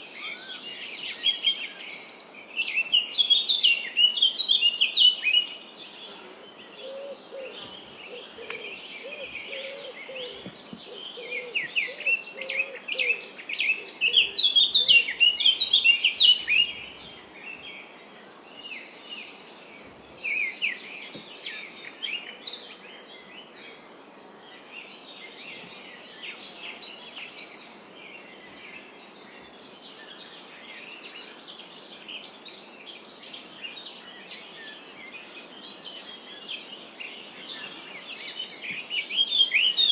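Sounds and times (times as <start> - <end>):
birds chirping and singing: 0.0 - 23.6
background hiss: 0.0 - 39.9.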